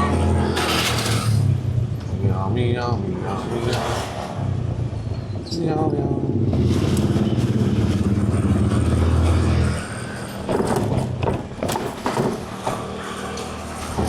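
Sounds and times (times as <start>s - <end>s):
vehicle engine rumbling: 0.0s - 14.0s
sharp knocks: 10.4s - 13.0s.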